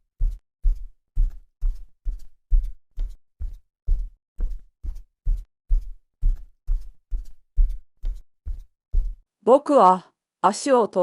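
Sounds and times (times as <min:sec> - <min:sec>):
footsteps dull thuds: 0:00.0 - 0:09.3.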